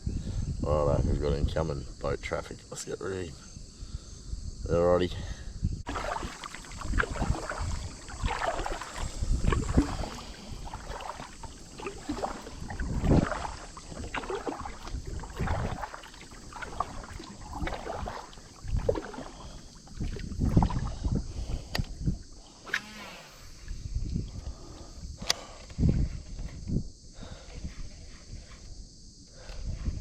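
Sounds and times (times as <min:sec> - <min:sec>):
water splashing around boat: 0:05.9 - 0:22.6.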